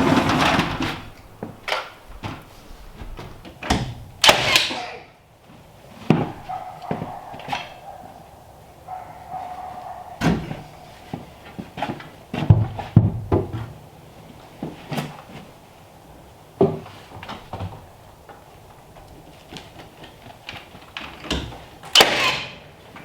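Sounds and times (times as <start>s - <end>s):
knocks and thumps: 6.0s - 7.8s, 10.1s - 13.8s.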